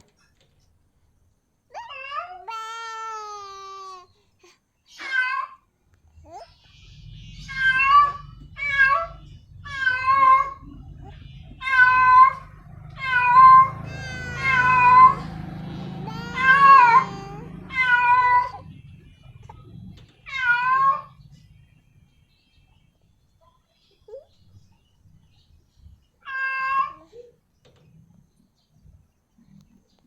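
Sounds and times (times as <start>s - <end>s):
cat meowing loudly: 7.5s - 10.6s, 11.6s - 15.3s, 15.9s - 18.6s, 20.2s - 21.2s, 26.2s - 27.1s.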